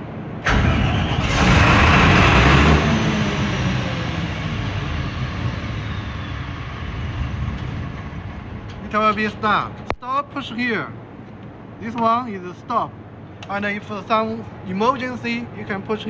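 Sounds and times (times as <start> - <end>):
diesel generator starting and running: 0.0 - 11.8.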